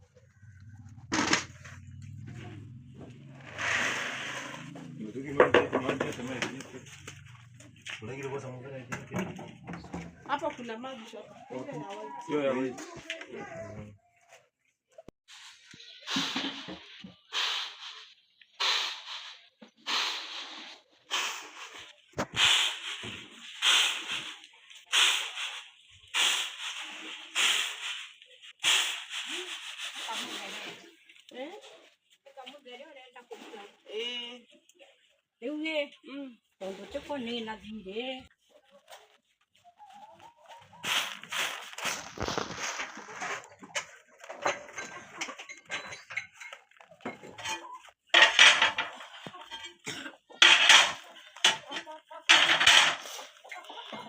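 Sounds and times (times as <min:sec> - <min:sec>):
pots scraping: 0:00.1 - 0:10.7, 0:36.6 - 0:54.0
rough scraping strokes: 0:01.5 - 0:05.2, 0:40.6 - 0:45.1
metal utensils clinking: 0:44.4 - 0:53.0.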